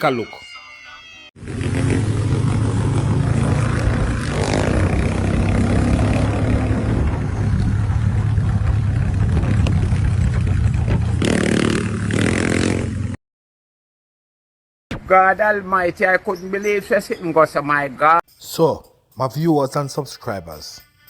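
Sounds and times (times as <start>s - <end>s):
motorcycle engine running: 1.4s - 13.2s
road traffic noise: 1.4s - 13.2s.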